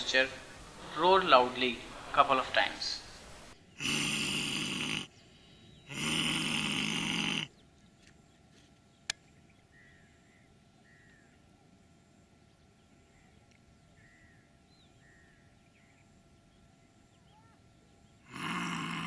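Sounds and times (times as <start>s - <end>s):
person roaring: 3.8s - 5.1s, 5.9s - 7.5s, 18.3s - 19.0s.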